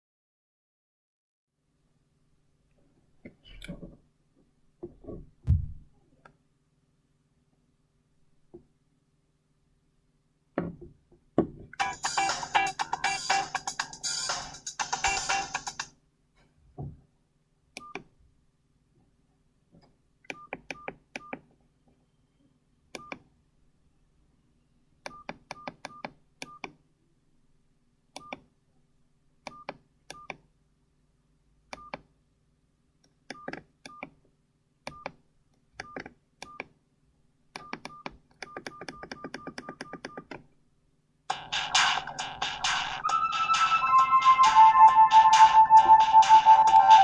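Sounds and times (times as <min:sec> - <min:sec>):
phone keypad beeps with clicks: 0:25.1 - 0:26.7, 0:29.5 - 0:30.4, 0:31.7 - 0:32.0, 0:35.8 - 0:36.7, 0:37.6 - 0:40.3.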